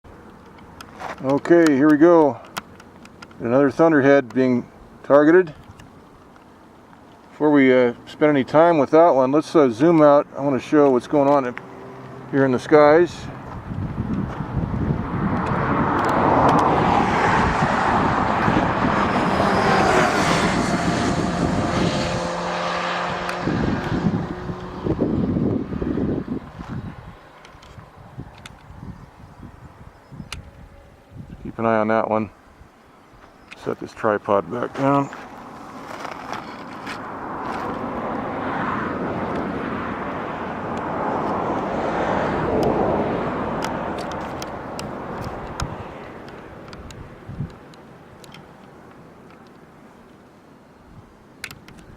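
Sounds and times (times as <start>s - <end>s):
distant vehicle passing: 7.4s - 32.4s, 33.5s - 49.3s
airplane engine drone: 14.4s - 28.7s.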